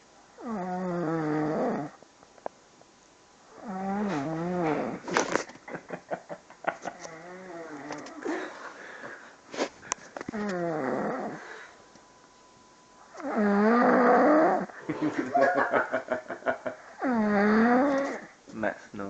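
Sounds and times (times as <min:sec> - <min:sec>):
man snoring loudly: 0:00.4 - 0:02.0, 0:03.6 - 0:05.0, 0:10.4 - 0:11.4, 0:13.2 - 0:14.7, 0:17.0 - 0:18.3.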